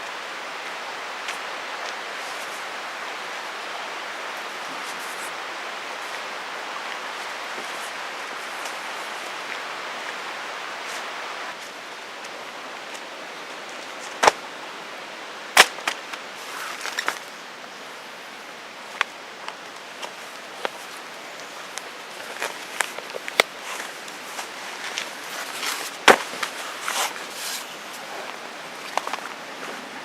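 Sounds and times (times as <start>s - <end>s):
steady hiss: 0.0s - 30.0s.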